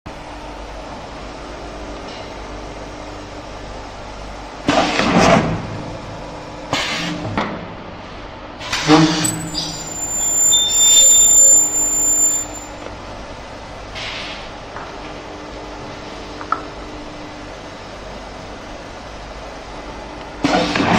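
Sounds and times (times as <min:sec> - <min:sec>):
steady machine hum: 0:09.2 - 0:12.7
high-pitched spindle whine: 0:09.2 - 0:12.8.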